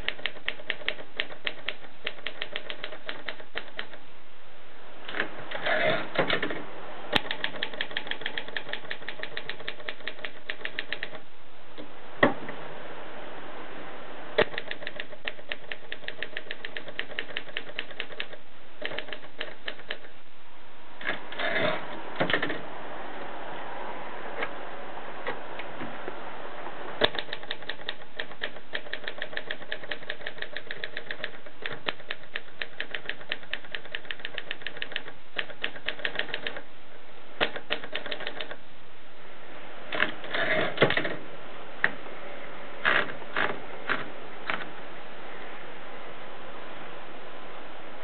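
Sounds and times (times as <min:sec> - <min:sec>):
typewriter key strikes: 0:00.0 - 0:04.0, 0:07.2 - 0:11.2, 0:14.4 - 0:20.1, 0:27.0 - 0:36.6, 0:37.4 - 0:38.5.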